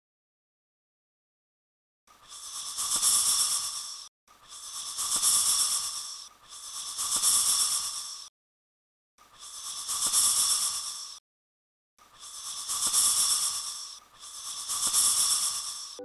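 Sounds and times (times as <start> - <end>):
snake hissing: 2.2 - 8.3, 9.4 - 11.2, 12.2 - 16.0.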